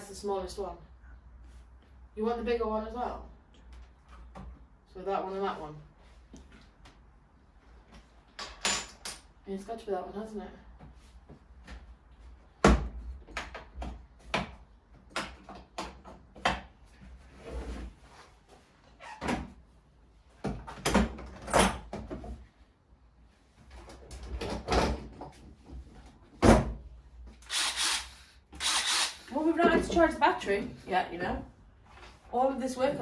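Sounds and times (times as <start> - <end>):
tools knocking and clattering: 8.3 - 9.3.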